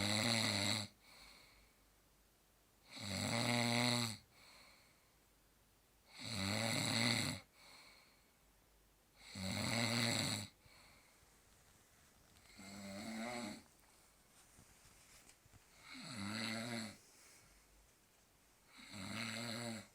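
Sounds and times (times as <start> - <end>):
man snoring: 0.0 - 1.0, 2.9 - 4.3, 6.1 - 7.5, 9.2 - 10.6, 12.5 - 13.7, 15.8 - 17.0, 18.7 - 19.9.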